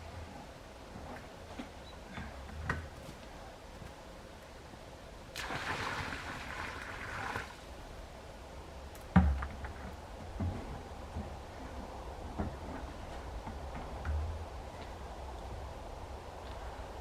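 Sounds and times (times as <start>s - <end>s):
water splashing: 5.4s - 7.7s.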